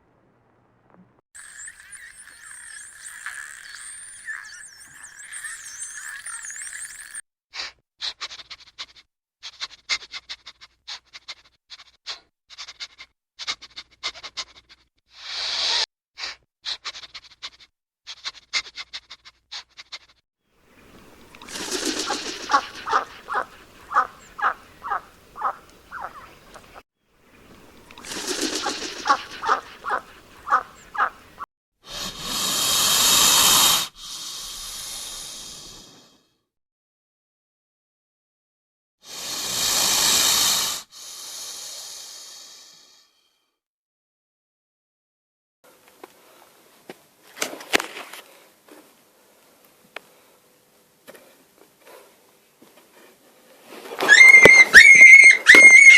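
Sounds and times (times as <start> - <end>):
short animal calls: 21.5 - 26.8, 28.0 - 31.4
loud hiss: 32.0 - 35.9, 39.1 - 42.5.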